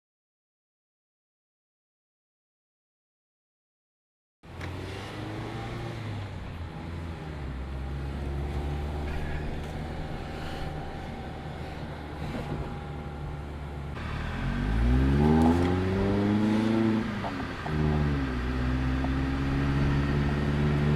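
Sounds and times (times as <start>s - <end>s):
car engine running steadily: 4.4s - 20.9s.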